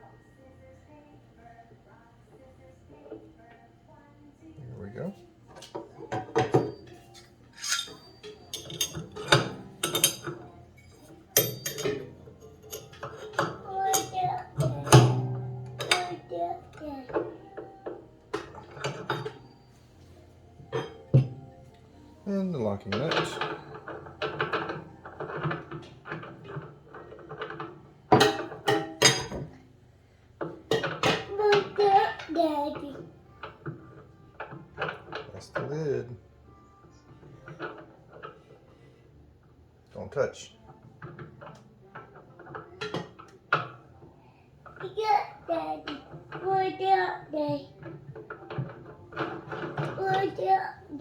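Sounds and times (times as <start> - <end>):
metal parts clinking and clanking: 5.6 - 19.6, 22.8 - 29.5.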